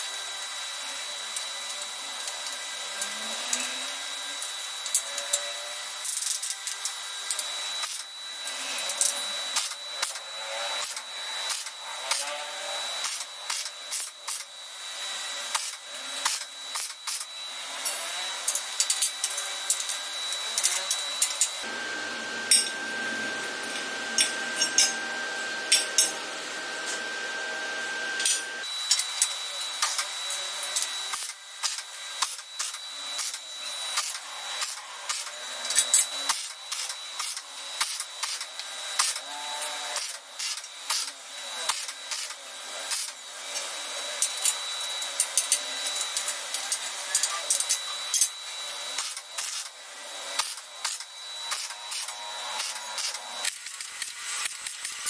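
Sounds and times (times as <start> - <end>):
high-pitched tool whine: 0.0 - 55.0
deeper steady tool tone: 16.8 - 29.6.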